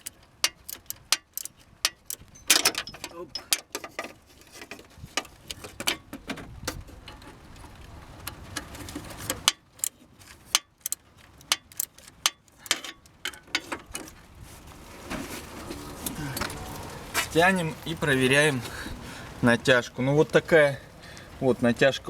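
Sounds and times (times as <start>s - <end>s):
wrench clicking on bolt: 0.0s - 3.8s, 9.3s - 13.8s.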